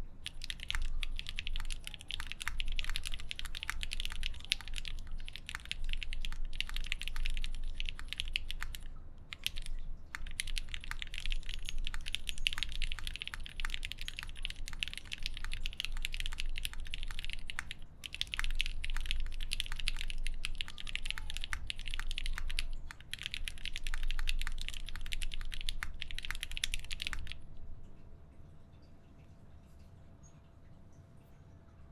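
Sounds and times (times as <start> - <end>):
mechanical keyboard typing: 0.2 - 27.4.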